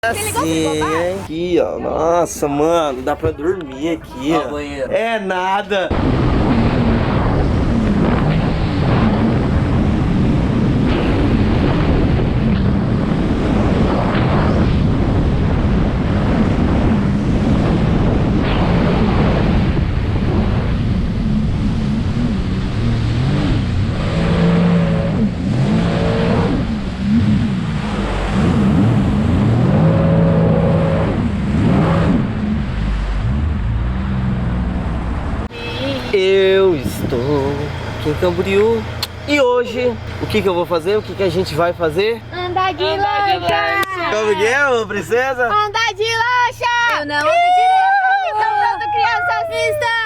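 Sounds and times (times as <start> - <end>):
vehicle engine rumble: 0.0 - 50.0
wind noise on microphone: 5.9 - 38.0.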